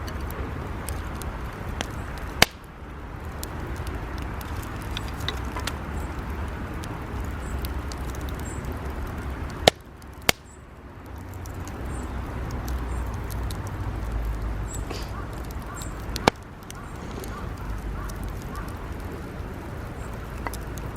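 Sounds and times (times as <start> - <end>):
campfire crackling: 0.0 - 20.9
loud sharp pops: 1.7 - 2.7, 9.5 - 10.6, 12.5 - 19.1.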